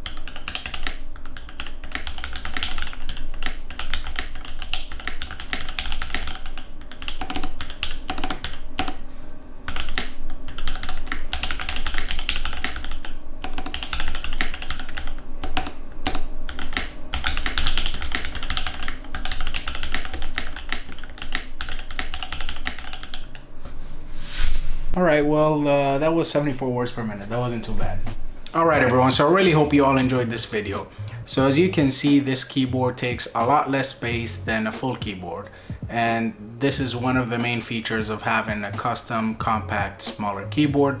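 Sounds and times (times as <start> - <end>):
fast typing on mechanical keyboard: 0.0 - 9.0, 9.7 - 23.4.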